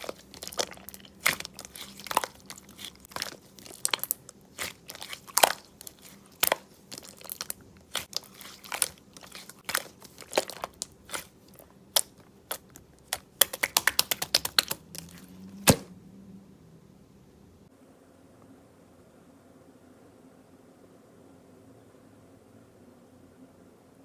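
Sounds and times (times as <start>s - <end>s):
slime squished by hand: 0.0s - 15.9s
slime clicks and pops: 12.0s - 15.1s.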